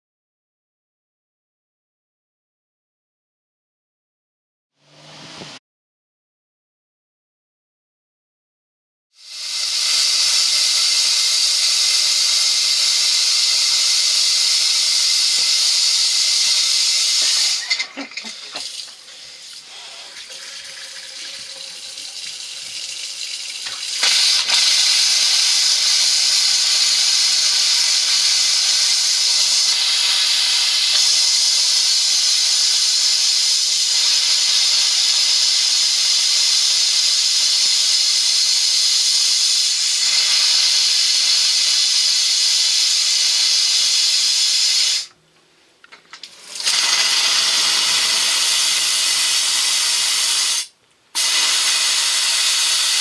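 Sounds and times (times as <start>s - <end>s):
compressed air hissing: 9.2s - 21.9s, 23.8s - 45.1s, 46.6s - 53.0s.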